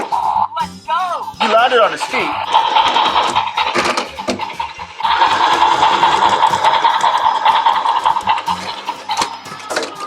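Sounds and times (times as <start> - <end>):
toy train buzzing whir: 2.0 - 10.0.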